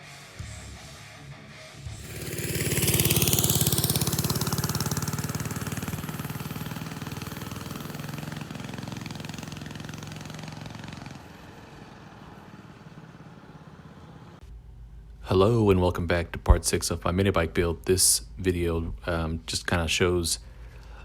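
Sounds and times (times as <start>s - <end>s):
small engine running: 2.0s - 14.4s.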